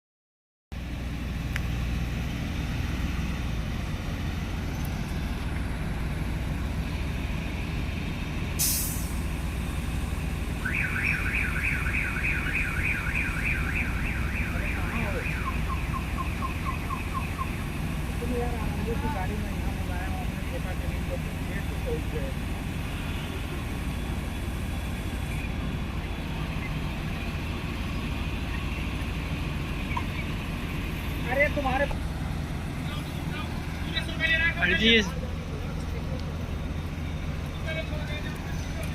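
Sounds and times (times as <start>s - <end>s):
heavy machine engine rumbling: 0.8s - 38.9s
air release hiss: 8.6s - 9.2s
warbling warning alarm: 10.5s - 18.0s.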